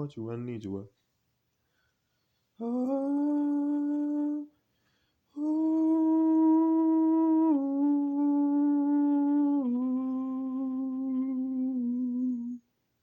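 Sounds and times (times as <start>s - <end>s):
person singing long ooh note: 2.6s - 4.6s, 5.4s - 12.7s.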